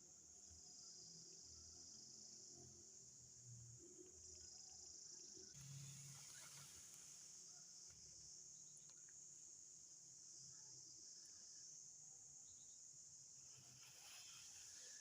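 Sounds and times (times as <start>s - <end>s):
insects chirring: 4.2s - 11.8s, 12.4s - 15.0s.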